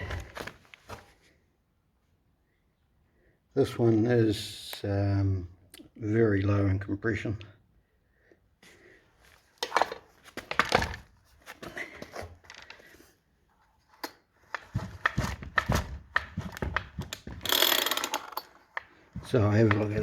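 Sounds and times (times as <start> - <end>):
chainsaw body knocking on bench: 14.7 - 18.4.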